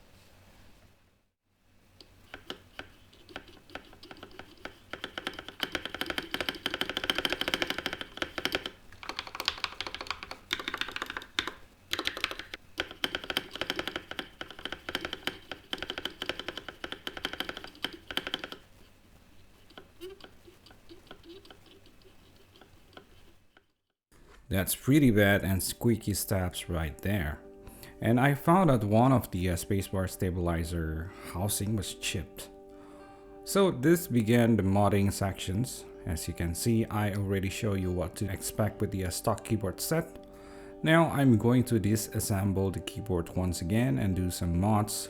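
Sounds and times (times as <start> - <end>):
squeaky keyboard stabilizers: 2.1 - 23.8
mechanical keyboard typing: 2.2 - 18.8, 19.6 - 23.3.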